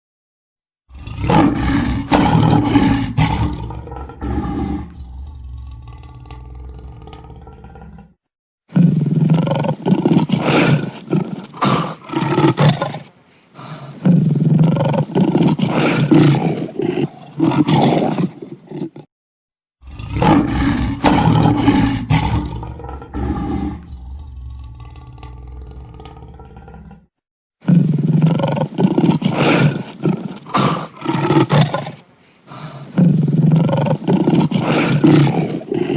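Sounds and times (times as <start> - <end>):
lions roaring: 0.9 - 8.2, 13.9 - 19.0, 19.8 - 27.1, 32.9 - 35.9.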